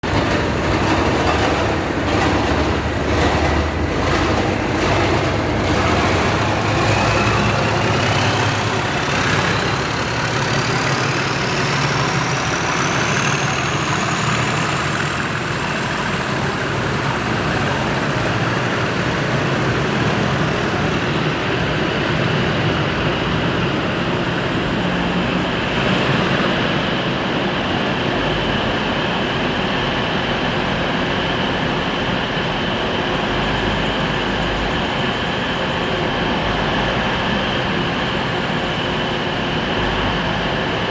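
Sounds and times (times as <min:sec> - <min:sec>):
turbocharger whine: 0:00.0 - 0:21.3
diesel locomotive engine growl: 0:00.0 - 0:40.9.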